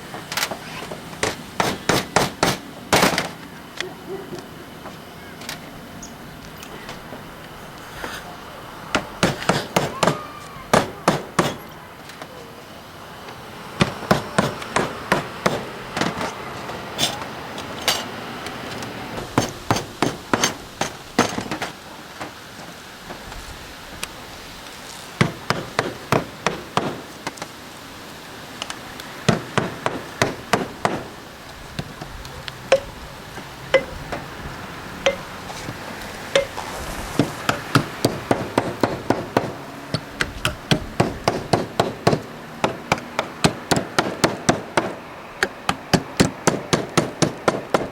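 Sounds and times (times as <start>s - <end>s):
hammer striking copper: 0.8s - 3.4s, 8.9s - 11.8s, 13.8s - 16.4s, 17.0s - 18.1s, 19.2s - 21.7s, 32.7s - 33.0s, 33.7s - 34.3s, 35.0s - 47.9s.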